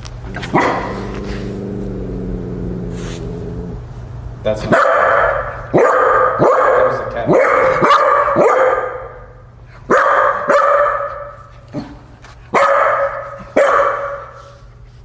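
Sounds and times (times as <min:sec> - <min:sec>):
dog barking: 0:00.4 - 0:01.1, 0:04.7 - 0:09.3, 0:09.9 - 0:11.9, 0:12.5 - 0:14.6.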